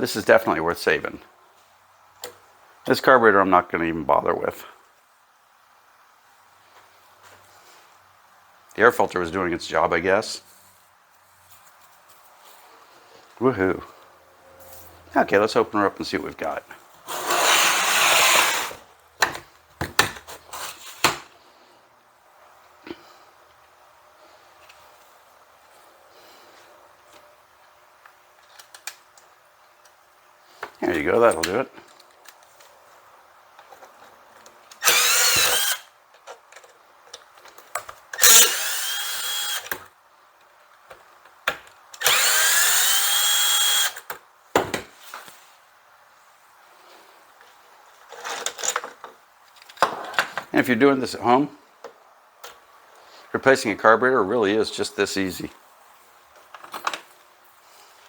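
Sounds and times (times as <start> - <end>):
cordless drill whining: 17.1 - 18.8, 34.8 - 35.9, 38.2 - 39.8, 42.0 - 44.1.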